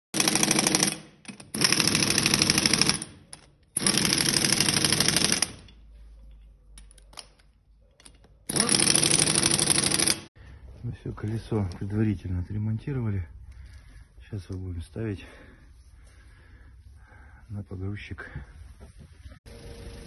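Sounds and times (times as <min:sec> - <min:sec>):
pneumatic impact wrench rattling: 0:00.2 - 0:05.8, 0:08.4 - 0:10.3.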